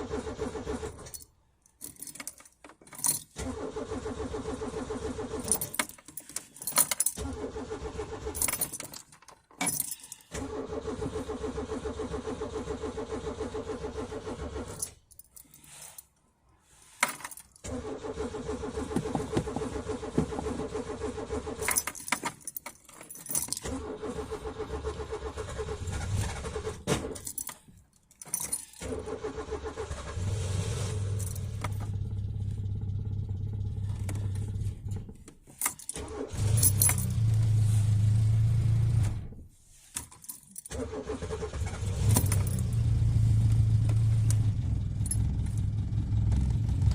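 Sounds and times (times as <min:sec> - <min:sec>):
starter motor cranking engine: 0:03.4 - 0:05.5, 0:17.7 - 0:21.6, 0:40.7 - 0:42.9
low engine hum: 0:41.9 - 0:46.9.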